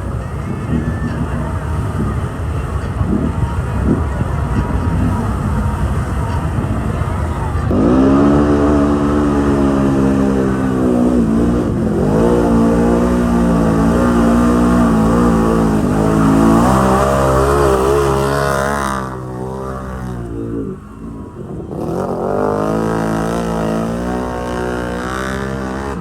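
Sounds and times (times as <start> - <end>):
atv engine revving: 0.0 - 26.0.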